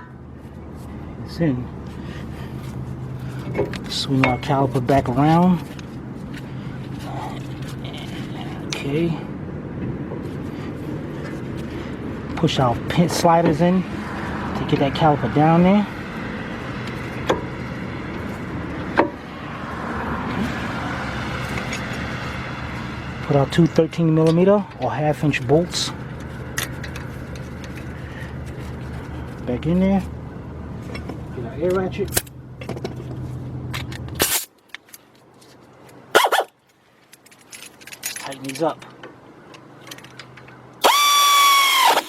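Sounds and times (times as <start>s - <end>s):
steady low hum: 0.0s - 34.4s
steady background noise: 0.0s - 42.0s
brake caliper knocks: 16.8s - 19.2s.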